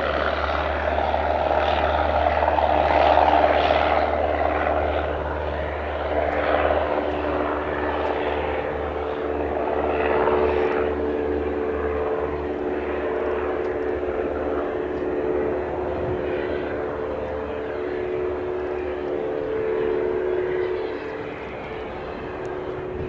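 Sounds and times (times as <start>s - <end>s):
light aircraft engine and propeller: 0.0s - 23.0s.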